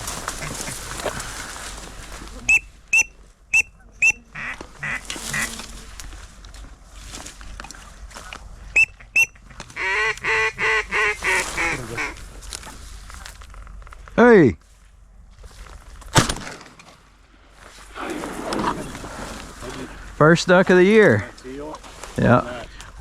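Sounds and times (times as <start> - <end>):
duck whistle peeps: 2.5 - 4.5, 8.7 - 9.4
duck call quacks: 2.5 - 5.6, 8.8 - 12.2.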